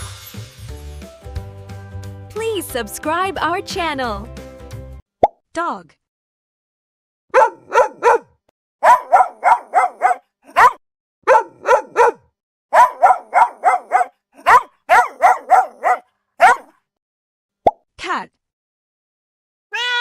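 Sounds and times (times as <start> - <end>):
dog barking: 7.3 - 16.8.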